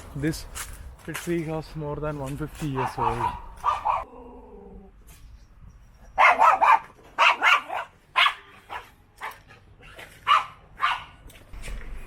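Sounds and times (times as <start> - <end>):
dog barking: 2.8 - 4.1, 6.2 - 9.6, 10.2 - 11.2.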